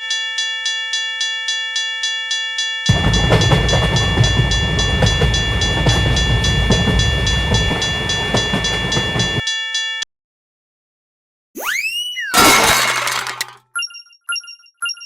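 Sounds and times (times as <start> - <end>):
train passing with wheel clatter: 2.9 - 9.4
crossing bell dinging: 2.9 - 9.5.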